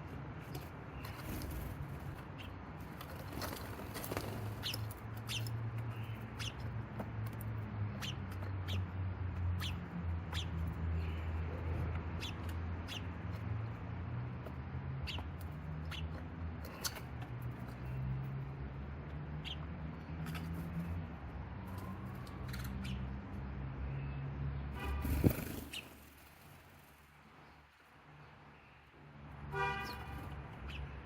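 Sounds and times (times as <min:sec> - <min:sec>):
distant traffic hum: 0:00.0 - 0:31.0
sparrows chirping: 0:00.4 - 0:31.0
car horn toot: 0:29.5 - 0:30.1.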